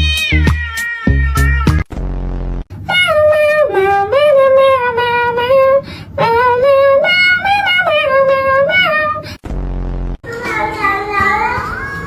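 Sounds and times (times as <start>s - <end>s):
high-pitched voice singing: 2.9s - 9.2s.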